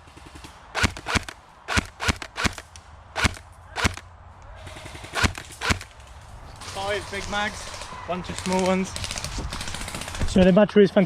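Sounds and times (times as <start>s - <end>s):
airsoft gun shots: 0.3s - 4.0s, 4.6s - 5.9s.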